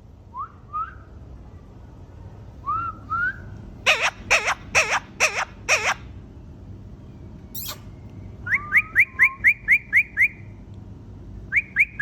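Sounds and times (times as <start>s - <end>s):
parrot calls with wavering pitch: 3.9s - 6.1s
parrot whistling: 3.9s - 6.1s.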